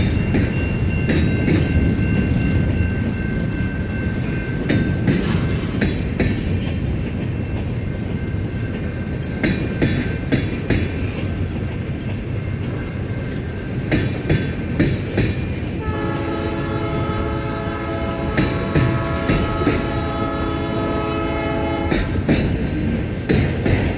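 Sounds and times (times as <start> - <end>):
freight train rumbling: 0.0 - 23.9
wheels clacking over rail joints: 4.2 - 23.9
locomotive air horn blast: 15.8 - 22.1.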